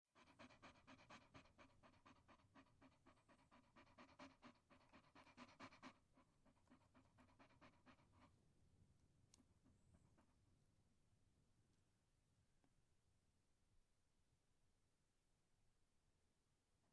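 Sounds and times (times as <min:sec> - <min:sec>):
dog panting: 0:00.1 - 0:08.6.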